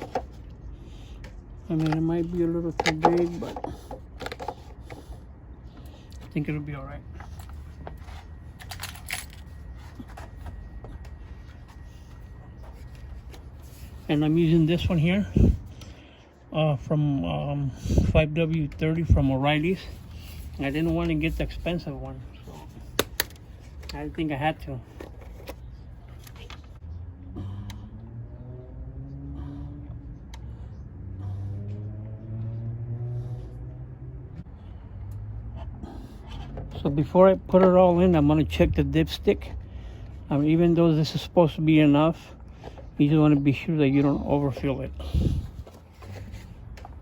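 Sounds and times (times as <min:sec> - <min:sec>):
low hum: 0:00.0 - 0:36.6
vehicle engine revving: 0:26.8 - 0:30.2, 0:30.8 - 0:36.0.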